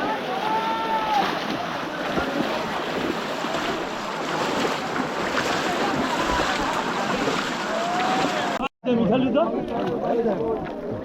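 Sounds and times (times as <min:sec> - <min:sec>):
people wading through water: 0:00.0 - 0:08.7, 0:09.4 - 0:11.0.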